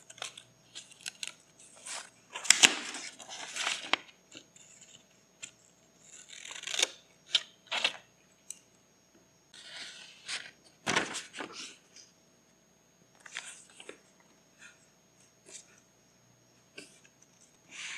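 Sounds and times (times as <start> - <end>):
paper rustling and crinkling: 0.2 - 4.1, 10.3 - 11.8.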